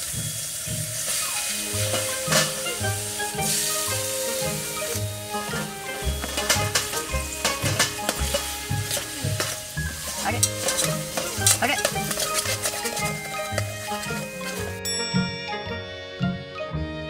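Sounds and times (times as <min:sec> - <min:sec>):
food sizzling in a pan: 0:00.0 - 0:14.8
background music with bass line: 0:00.0 - 0:17.0
utensils clicking: 0:04.8 - 0:14.8.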